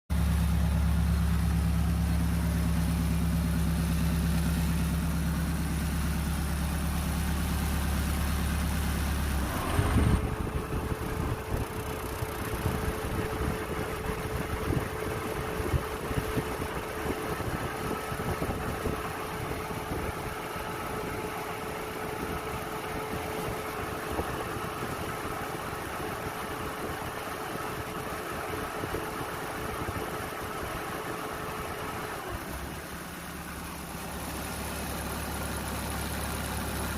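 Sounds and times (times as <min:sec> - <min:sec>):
deep hum: 0:00.1 - 0:25.0
car engine idling: 0:00.1 - 0:36.9.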